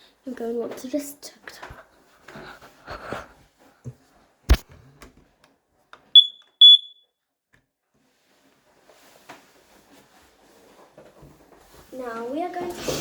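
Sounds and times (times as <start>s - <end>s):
sharp knock on alarm unit: 6.2s - 7.0s
smoke alarm beeps: 6.2s - 7.0s.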